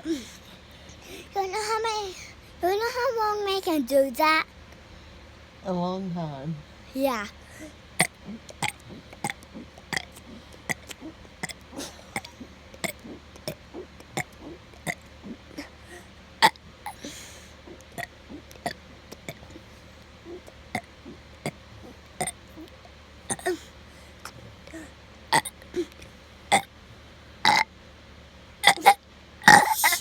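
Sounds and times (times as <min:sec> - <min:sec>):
child burping: 0:08.0 - 0:15.0, 0:15.6 - 0:17.2, 0:23.3 - 0:23.6, 0:28.6 - 0:30.0.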